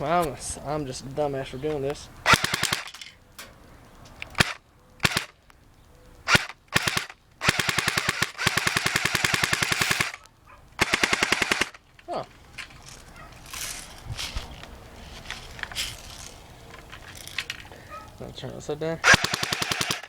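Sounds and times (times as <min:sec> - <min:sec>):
airsoft gun full-auto bursts: 0:02.2 - 0:02.9, 0:04.4 - 0:05.4, 0:06.3 - 0:10.2, 0:10.8 - 0:11.8, 0:19.0 - 0:20.0
airsoft gun firing single shots: 0:02.2 - 0:03.0, 0:04.4 - 0:05.4, 0:06.3 - 0:10.2, 0:10.8 - 0:11.8, 0:19.0 - 0:20.0.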